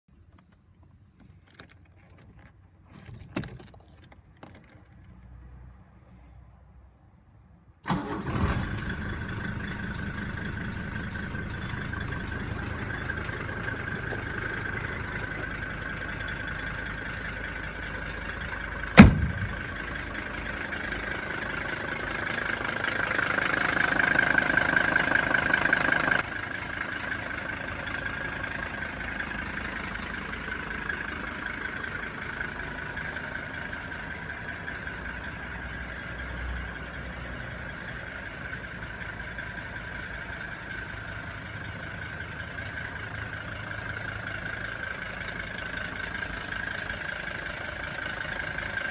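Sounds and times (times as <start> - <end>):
car engine idling: 7.9 - 48.9.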